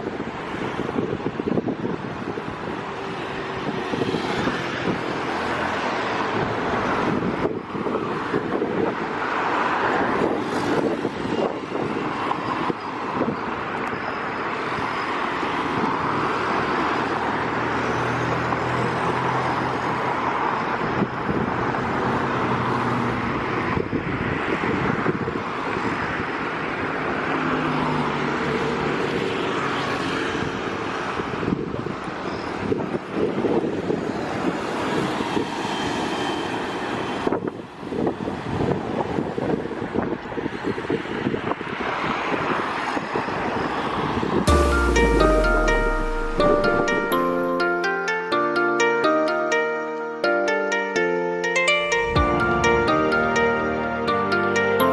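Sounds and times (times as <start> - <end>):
road traffic passing: 0.0 - 24.7.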